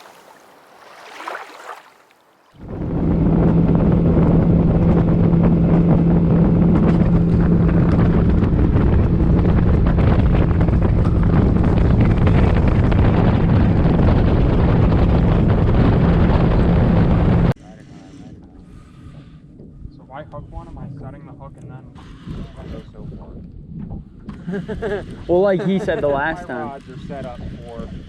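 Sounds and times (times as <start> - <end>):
wind on microphone: 2.5 - 28.0
outboard motor running: 2.6 - 17.5.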